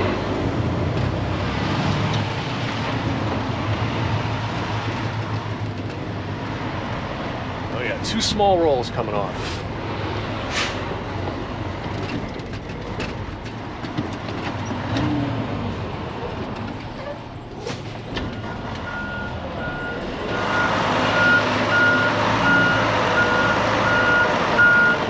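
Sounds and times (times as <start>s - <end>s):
diesel truck engine running: 0.0s - 25.0s
reversing alarm beeping: 18.3s - 25.0s.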